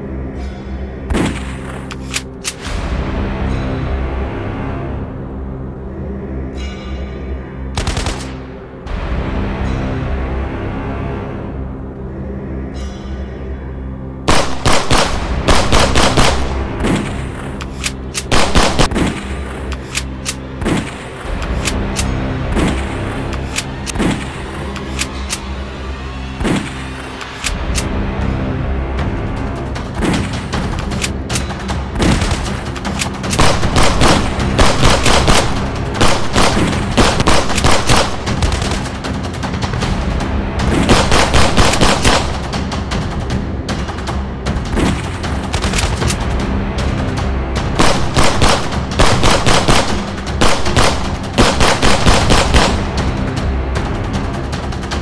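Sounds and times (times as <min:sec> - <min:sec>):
background music: 0:00.0 - 0:55.0
gunshot bursts: 0:07.8 - 0:08.5, 0:14.3 - 0:25.4, 0:30.0 - 0:39.8, 0:40.6 - 0:42.8, 0:47.7 - 0:53.3
rapid gunfire: 0:07.8 - 0:08.5, 0:14.3 - 0:25.5, 0:29.6 - 0:55.0.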